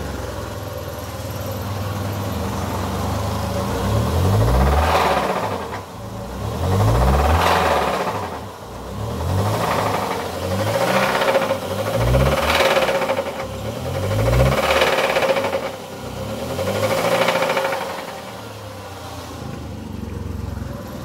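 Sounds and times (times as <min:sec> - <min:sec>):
car engine revving: 0:01.4 - 0:21.0
engine knocking: 0:06.7 - 0:08.6, 0:09.5 - 0:18.4.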